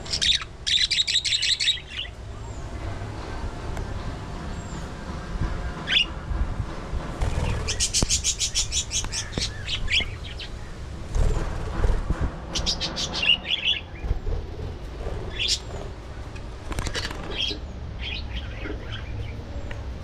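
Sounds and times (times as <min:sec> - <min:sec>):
budgerigars chirping: 0:00.0 - 0:02.1, 0:07.4 - 0:10.6, 0:15.3 - 0:15.7
low background rumble: 0:00.0 - 0:20.0.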